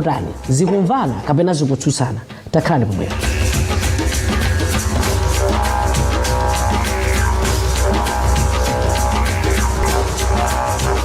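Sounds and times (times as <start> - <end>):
fast drum beat: 3.1 - 11.0
low sustained tone: 3.3 - 11.0.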